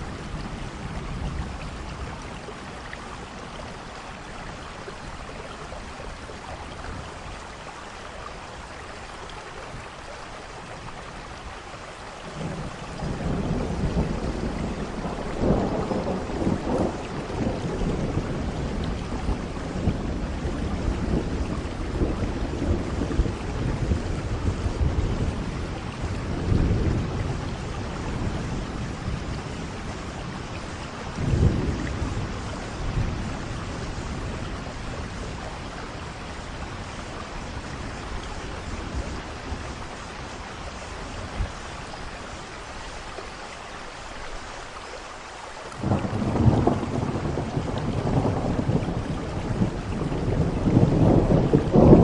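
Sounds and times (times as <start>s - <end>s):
steady rain: 0.0s - 52.0s
rolling thunder: 12.3s - 42.3s, 45.7s - 52.0s.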